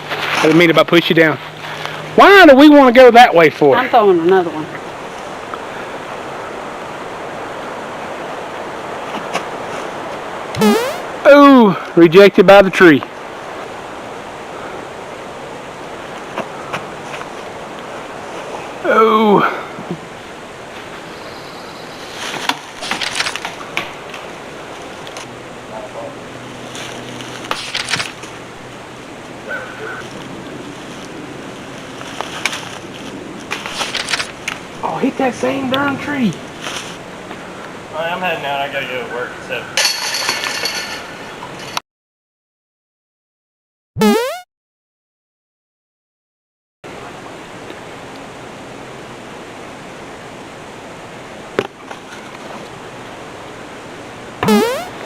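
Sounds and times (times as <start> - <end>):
rushing outdoor noise: 0.0 - 41.8, 46.9 - 55.0.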